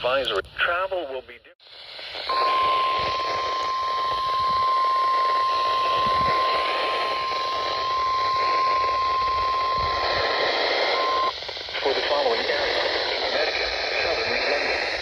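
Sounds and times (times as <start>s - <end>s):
radio static hiss: 0.0s - 15.0s
steady alarm beep: 2.2s - 11.4s.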